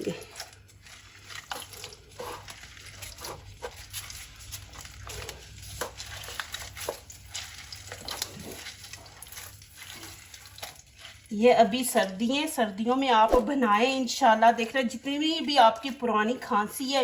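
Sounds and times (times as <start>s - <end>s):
wet squishing of orange: 0.0s - 13.5s.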